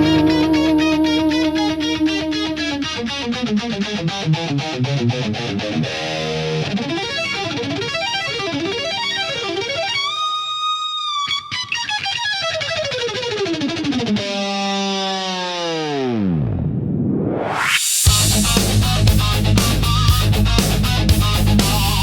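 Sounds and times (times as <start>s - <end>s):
electric guitar solo: 0.0s - 16.7s.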